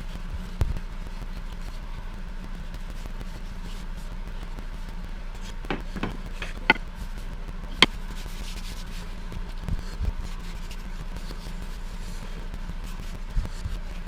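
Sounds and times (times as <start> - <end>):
dull thumps: 5.6 - 6.8
sharp clicks and knocks: 5.6 - 6.8.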